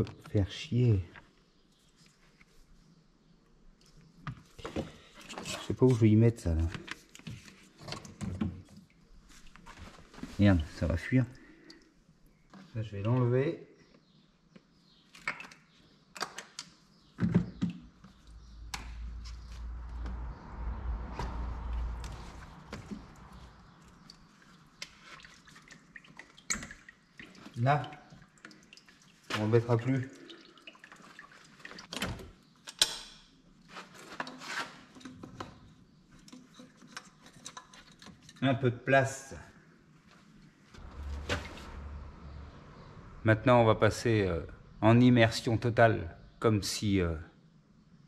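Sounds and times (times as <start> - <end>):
low rumble: 18.2 - 24.2, 40.8 - 45.0.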